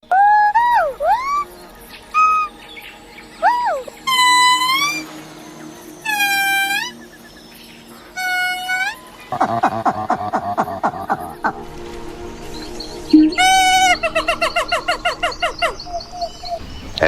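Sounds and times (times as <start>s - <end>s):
monkey whistle-like calls: 0.0s - 2.6s, 3.4s - 5.1s, 6.0s - 7.2s, 8.2s - 11.4s, 13.1s - 17.0s.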